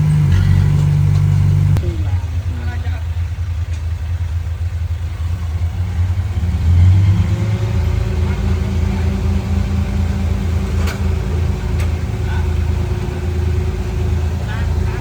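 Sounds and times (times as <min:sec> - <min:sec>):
steady machine whine: 0:00.0 - 0:02.1
diesel engine pulsing rumble: 0:00.0 - 0:15.0.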